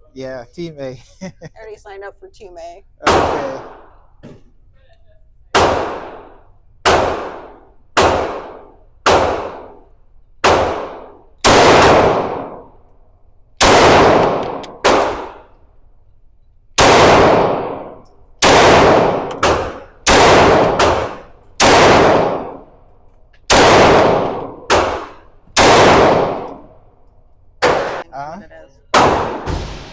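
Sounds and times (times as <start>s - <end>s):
gunshots echoing: 3.0s - 4.0s, 5.5s - 12.8s, 13.6s - 15.5s, 16.8s - 22.7s, 23.5s - 26.8s, 27.6s - 28.1s, 28.9s - 29.9s.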